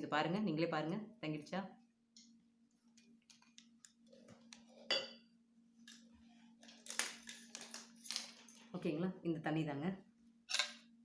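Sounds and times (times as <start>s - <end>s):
glass clink: 4.9s - 5.2s.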